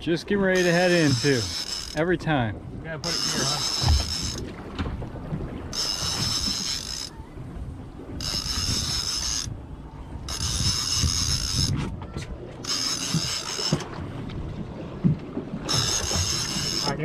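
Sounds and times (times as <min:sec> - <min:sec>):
boat running rumble: 0:00.0 - 0:17.0
low rumble of wind: 0:00.0 - 0:17.0
fishing reel whirring: 0:00.5 - 0:02.0, 0:03.0 - 0:04.4, 0:05.7 - 0:07.2, 0:08.2 - 0:09.6, 0:10.2 - 0:11.8, 0:12.6 - 0:13.8, 0:15.6 - 0:17.0.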